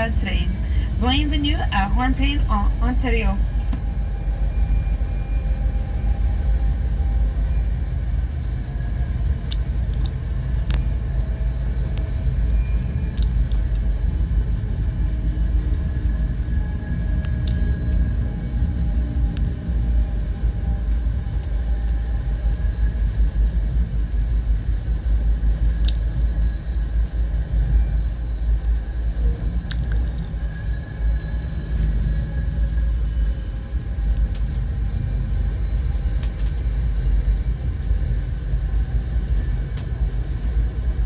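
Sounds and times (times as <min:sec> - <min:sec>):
train clicks and rattles: 0:00.0 - 0:41.0
train rumbling on rails: 0:00.0 - 0:41.0.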